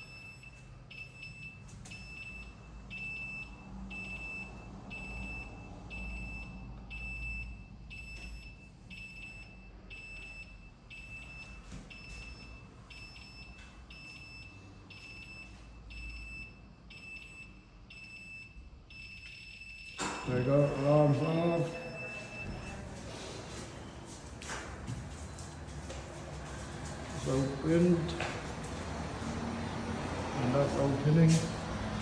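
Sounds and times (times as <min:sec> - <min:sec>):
fire alarm pulsing tone: 0:00.0 - 0:25.5.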